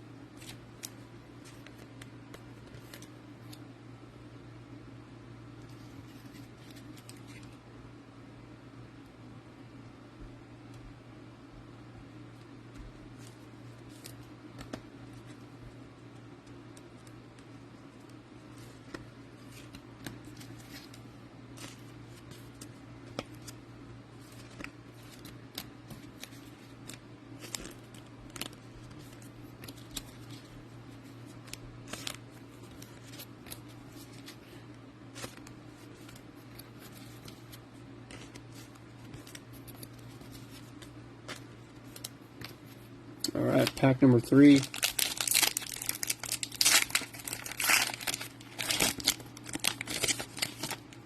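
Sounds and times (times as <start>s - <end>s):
steady low hum: 0.0s - 51.0s
cards and plastic sleeves clicking: 24.3s - 30.5s, 43.2s - 50.9s.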